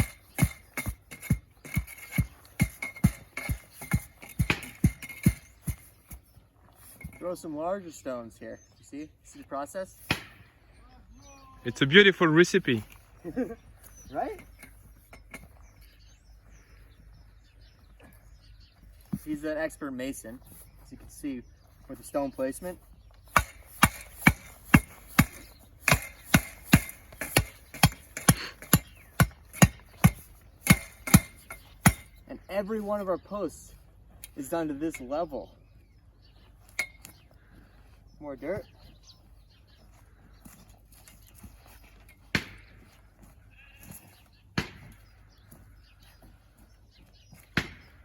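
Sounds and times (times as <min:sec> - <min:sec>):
tamping bar striking stones: 0:00.0 - 0:06.2, 0:23.3 - 0:32.2, 0:36.8 - 0:37.1.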